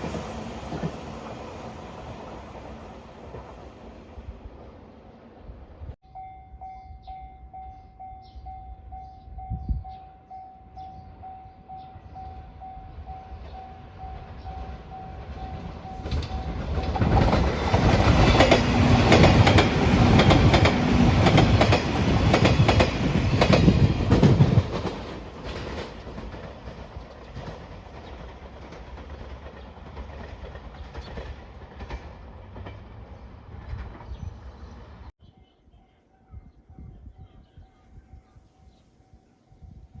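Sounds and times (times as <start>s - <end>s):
train wheels clicking over rail joints: 15.3s - 34.2s.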